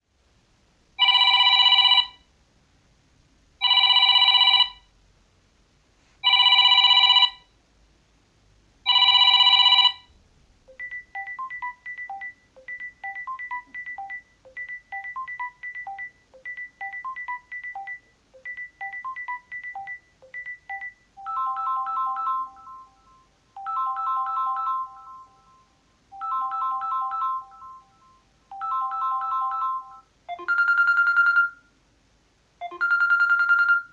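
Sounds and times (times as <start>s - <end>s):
phone ringtone chiming bursts: 8.9s - 10.1s, 10.7s - 31.6s, 32.6s - 33.9s
ringtone chord bursts: 10.7s - 31.4s
tinkling ringtone tune: 10.8s - 31.5s.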